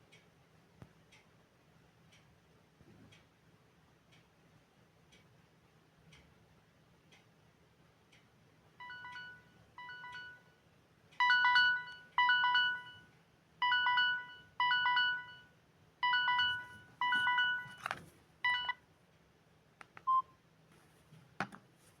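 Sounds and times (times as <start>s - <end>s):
phone alarm beeps: 8.8s - 10.6s, 11.2s - 18.8s, 20.0s - 20.3s.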